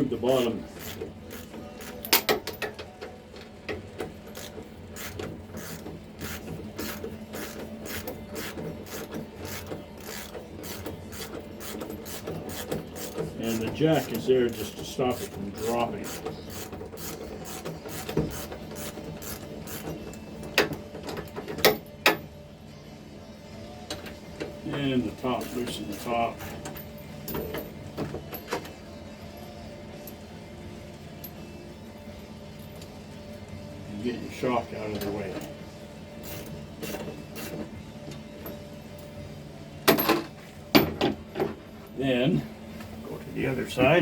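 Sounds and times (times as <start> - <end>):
ratchet wrench clicking: 0.8 - 2.7, 4.3 - 20.2.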